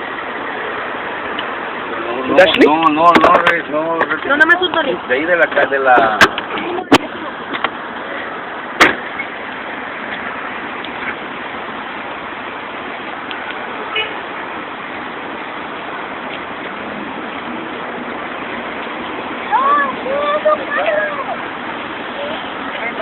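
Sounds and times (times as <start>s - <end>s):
street noise: 0.0s - 23.0s
loud sharp bang: 8.8s - 9.1s
car horn toot: 13.9s - 14.3s.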